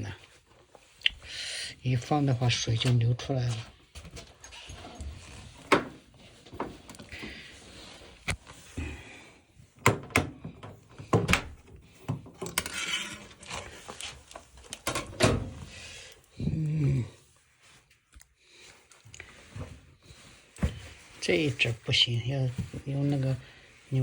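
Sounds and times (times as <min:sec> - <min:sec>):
knocks and clunks at washing machine: 0:09.8 - 0:12.3.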